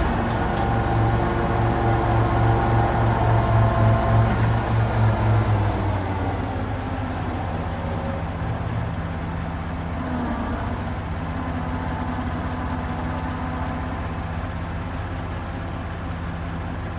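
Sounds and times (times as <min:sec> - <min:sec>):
throbbing engine note: 0:00.0 - 0:12.2
truck engine idling: 0:00.0 - 0:16.9.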